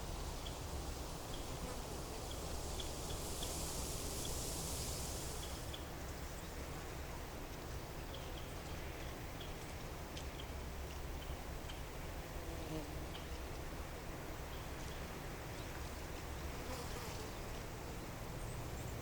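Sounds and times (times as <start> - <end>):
rustling hiss: 0.0 - 8.0.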